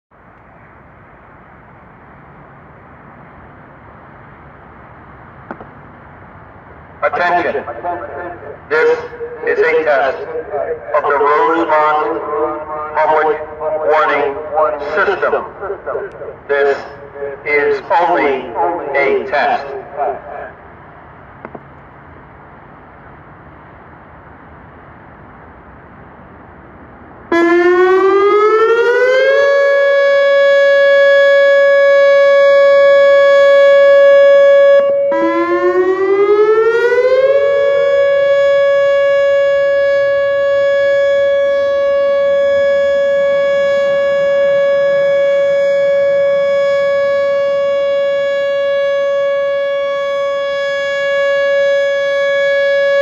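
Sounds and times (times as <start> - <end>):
electronic warning siren: 7.0 - 20.7, 27.2 - 53.0.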